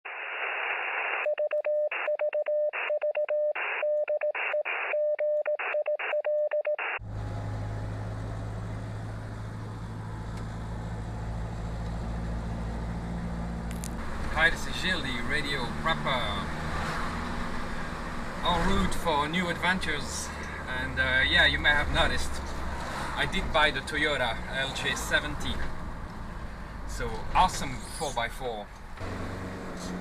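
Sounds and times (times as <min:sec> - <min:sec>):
morse code tone: 0:01.1 - 0:07.0
vehicle interior hum and road noise: 0:07.0 - 0:30.0.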